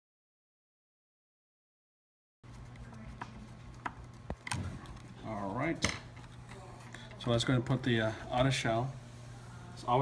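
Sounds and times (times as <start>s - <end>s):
low room hum: 2.4s - 10.0s.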